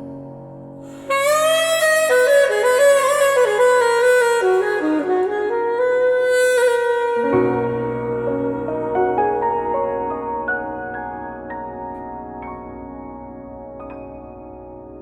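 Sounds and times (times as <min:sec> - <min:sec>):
soft backing music: 0:00.0 - 0:15.0
saxophone solo melody: 0:00.8 - 0:12.3.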